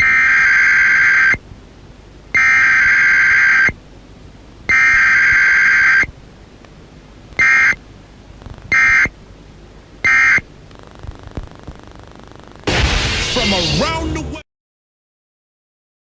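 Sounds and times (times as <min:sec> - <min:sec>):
buzzing data bursts: 0:00.0 - 0:01.4, 0:02.3 - 0:03.8, 0:04.7 - 0:06.1, 0:07.4 - 0:07.8, 0:08.4 - 0:09.2, 0:10.0 - 0:12.8.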